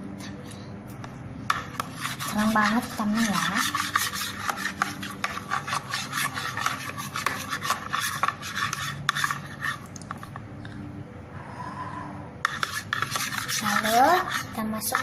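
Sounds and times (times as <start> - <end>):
stirrer scraping through thick glue: 1.7 - 10.2, 12.4 - 15.0.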